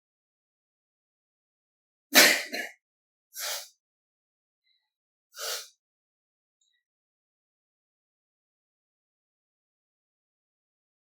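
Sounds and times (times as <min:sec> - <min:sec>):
short breathy sounds: 0:05.4 - 0:05.7.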